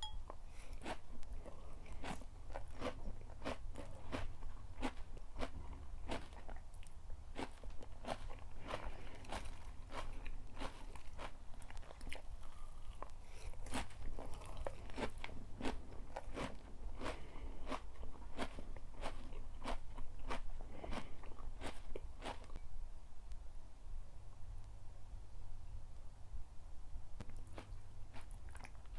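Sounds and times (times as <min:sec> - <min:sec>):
chewing crunchy food: 0:00.0 - 0:22.7, 0:27.2 - 0:28.9
low steady hum: 0:00.0 - 0:28.9.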